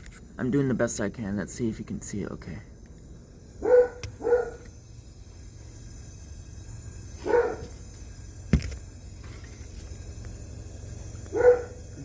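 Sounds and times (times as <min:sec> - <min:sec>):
dog barking: 0:03.6 - 0:04.6, 0:07.2 - 0:07.7, 0:11.3 - 0:11.8.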